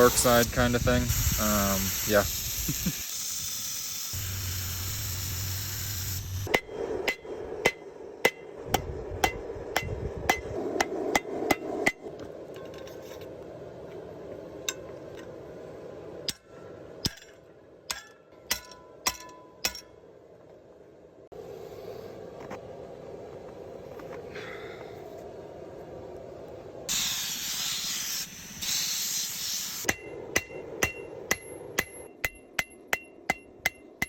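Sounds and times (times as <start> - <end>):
steady hiss: 0.0 - 9.8, 21.2 - 32.1
hammer striking steel on anvil: 6.5 - 12.1, 16.3 - 20.0, 29.9 - 34.0.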